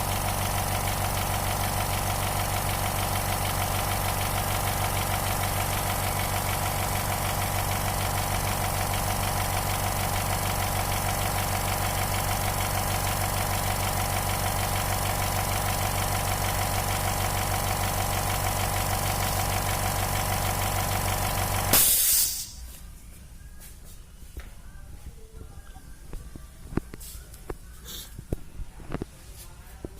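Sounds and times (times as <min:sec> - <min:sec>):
air compressor running: 0:00.0 - 0:22.7
air hiss burst: 0:21.7 - 0:22.6.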